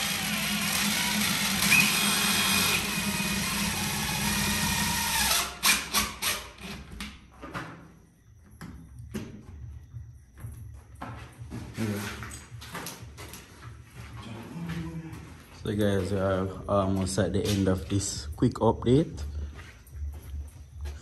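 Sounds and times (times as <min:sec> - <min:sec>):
power drill whining: 0:00.0 - 0:06.8.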